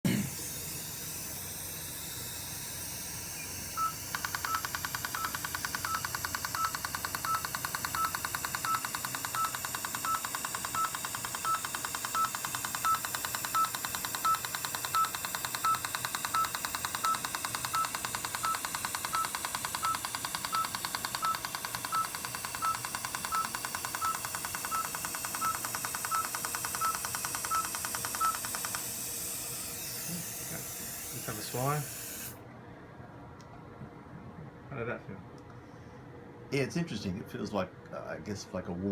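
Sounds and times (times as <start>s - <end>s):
rapid clicks of laser: 4.1s - 29.1s.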